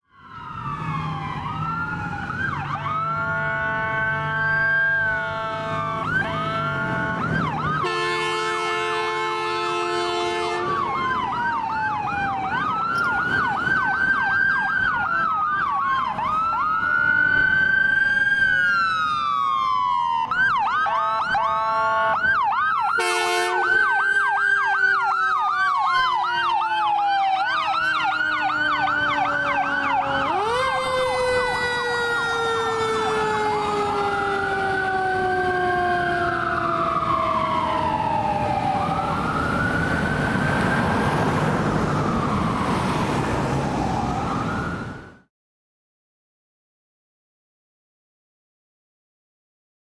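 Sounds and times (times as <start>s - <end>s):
low siren tone: 0.0s - 45.3s
sirens wailing and yelping: 0.0s - 45.3s
air horn blasts: 3.2s - 7.1s, 7.8s - 11.0s, 21.0s - 22.3s, 23.0s - 24.0s.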